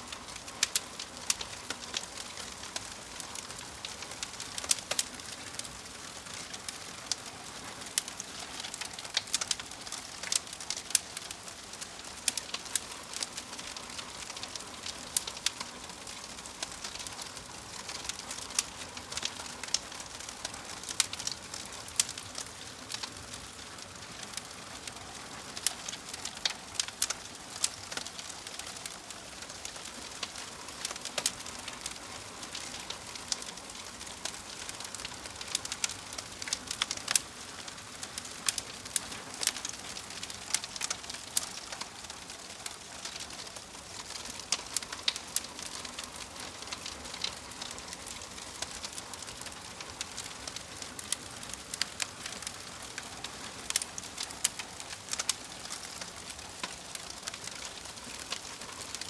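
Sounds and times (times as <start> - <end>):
fireplace logs crackling: 0.0 - 59.0.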